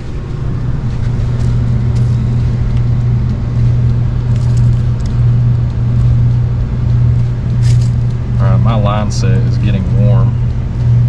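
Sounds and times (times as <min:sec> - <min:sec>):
heat pump low hum: 0:00.0 - 0:11.0.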